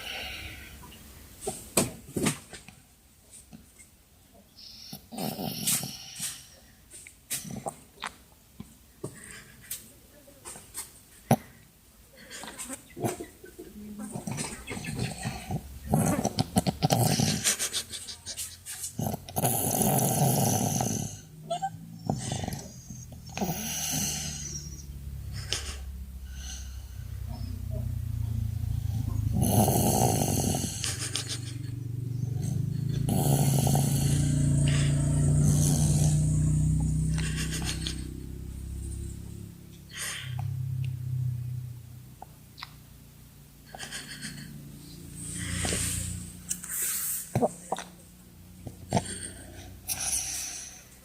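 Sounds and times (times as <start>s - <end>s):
rough growl-like snores: 5.0s - 6.2s, 14.9s - 17.7s, 19.0s - 21.4s, 22.0s - 27.0s, 28.7s - 40.4s, 48.9s - 50.9s.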